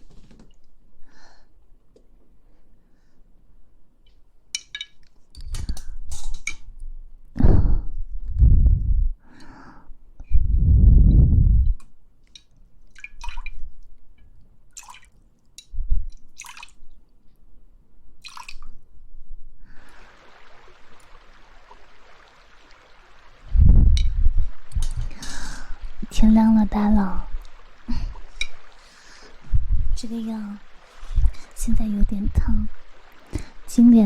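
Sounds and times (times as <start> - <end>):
water drips: 11.7 - 17.0, 18.2 - 18.8, 19.7 - 34.0
liquid hissing: 19.7 - 34.0.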